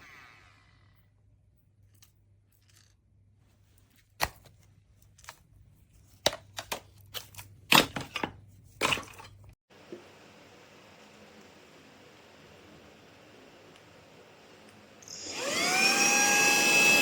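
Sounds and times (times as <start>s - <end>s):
plastic parts clicking and knocking: 6.1s - 9.3s.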